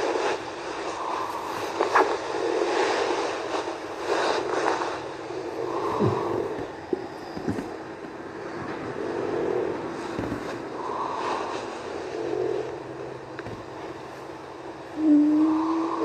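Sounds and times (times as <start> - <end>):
person snoring: 5.3 - 7.1, 15.0 - 16.0.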